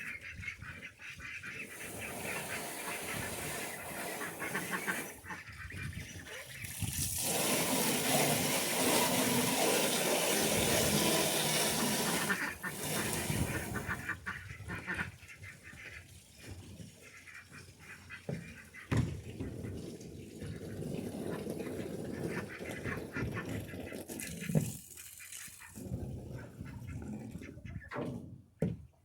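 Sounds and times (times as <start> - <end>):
ducks quacking: 0.0 - 6.8, 11.6 - 16.2
water pouring: 1.6 - 14.2, 15.9 - 27.5.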